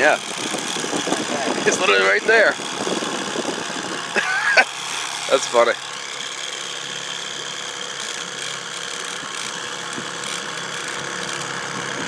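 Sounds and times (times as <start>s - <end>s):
outboard motor idling: 0.0s - 12.0s.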